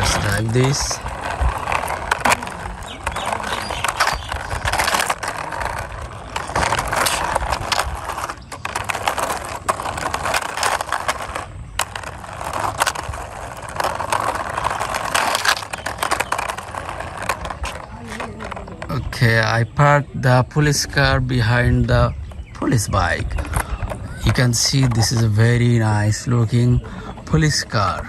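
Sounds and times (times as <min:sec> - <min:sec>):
toy car wheels rolling on wall: 0:00.0 - 0:19.4, 0:22.8 - 0:28.0.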